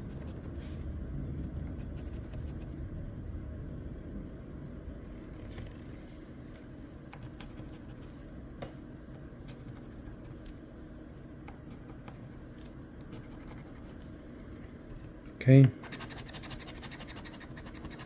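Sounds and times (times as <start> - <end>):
scratching lottery ticket coating: 11.8 - 14.1, 15.8 - 18.0.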